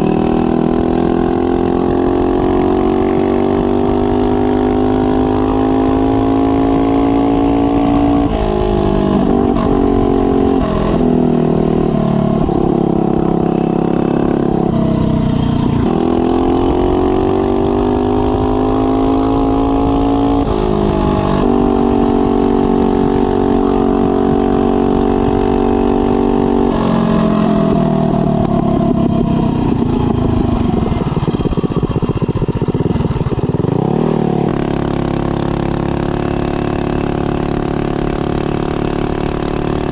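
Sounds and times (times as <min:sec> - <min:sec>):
wind noise on microphone: 0:00.0 - 0:39.9
mini bike engine running hard: 0:28.2 - 0:39.9.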